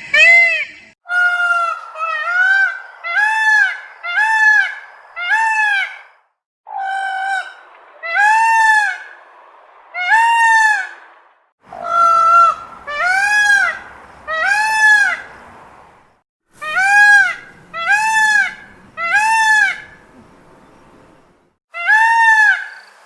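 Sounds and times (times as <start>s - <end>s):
large fowl honking: 16.6s - 20.0s.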